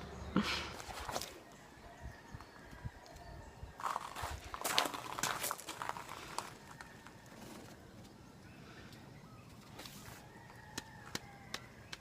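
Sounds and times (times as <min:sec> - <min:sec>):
bird chirps: 0:06.6 - 0:12.0.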